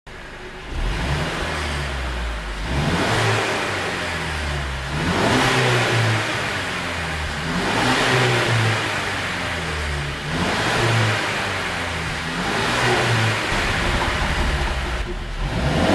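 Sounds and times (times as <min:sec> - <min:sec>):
car engine revving: 0:00.1 - 0:15.9
exhaust pops: 0:11.8 - 0:15.9.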